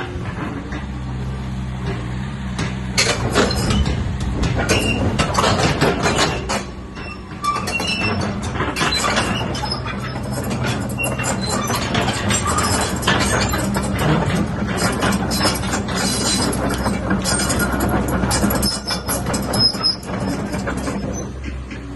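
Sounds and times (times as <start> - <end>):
metallic clanking and squealing: 0.0 - 1.3, 2.6 - 21.9
diesel engine humming: 0.0 - 21.9.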